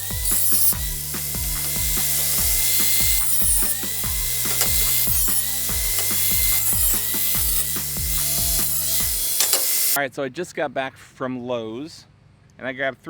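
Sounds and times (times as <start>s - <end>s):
held bass notes: 0.0s - 9.4s
electronic music with beat: 0.0s - 10.0s
deep kick drum: 0.1s - 6.6s, 7.8s - 9.2s.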